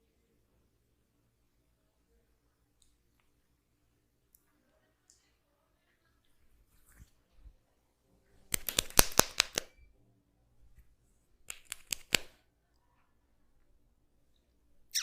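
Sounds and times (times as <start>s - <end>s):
hands snapping during massage: 8.5s - 9.8s, 11.4s - 12.4s.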